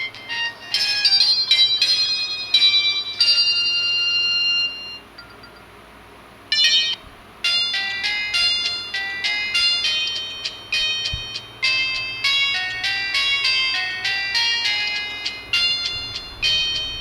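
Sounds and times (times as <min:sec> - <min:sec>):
phone ringtone melody: 0:00.0 - 0:05.6, 0:06.5 - 0:17.0
short chime: 0:15.2 - 0:17.0.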